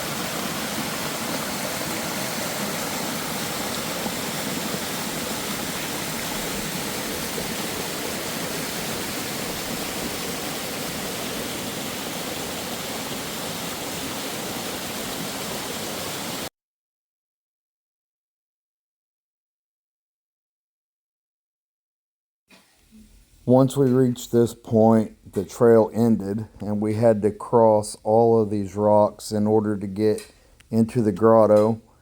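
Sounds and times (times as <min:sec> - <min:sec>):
waterfall splashing: 0:00.0 - 0:16.5.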